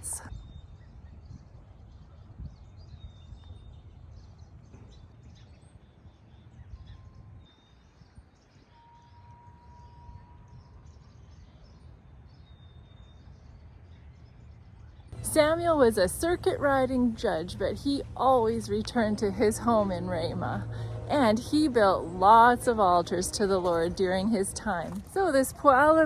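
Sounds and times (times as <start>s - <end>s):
low microphone rumble: 15.1s - 26.0s.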